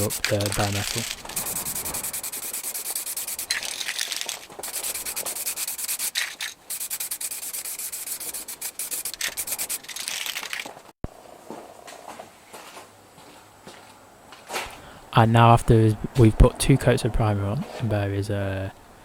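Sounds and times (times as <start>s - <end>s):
aerosol spray can hissing: 0.0s - 10.3s.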